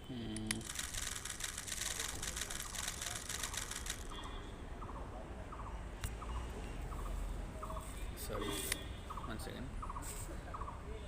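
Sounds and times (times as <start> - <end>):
puzzle cube plastic clicking: 0.3 - 4.1.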